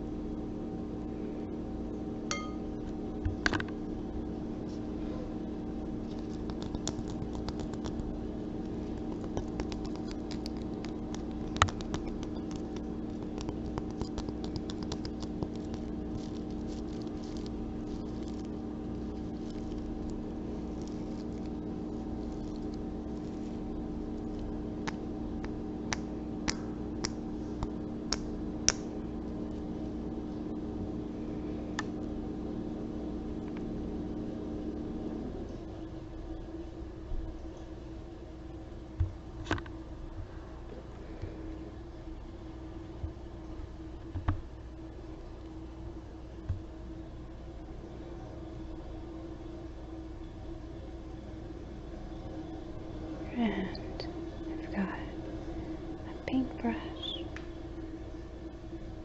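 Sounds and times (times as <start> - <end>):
steady low hum: 0.0 - 59.0
small objects clicking and scratching: 9.0 - 18.5.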